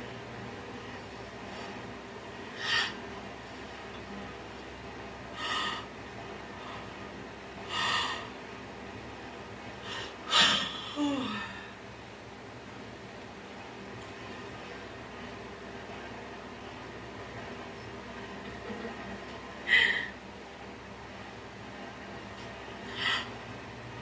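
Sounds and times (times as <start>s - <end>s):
person taking sharp breaths: 19.7s - 20.2s, 22.9s - 23.3s.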